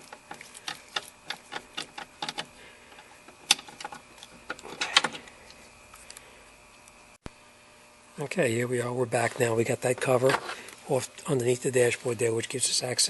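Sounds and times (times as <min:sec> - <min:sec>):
hand tools clicking and knocking: 0:00.0 - 0:02.5.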